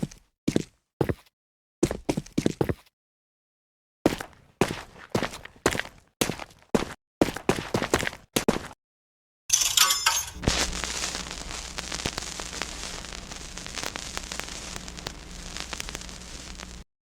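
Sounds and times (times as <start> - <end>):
crackling with sharp pops: 10.4 - 16.9.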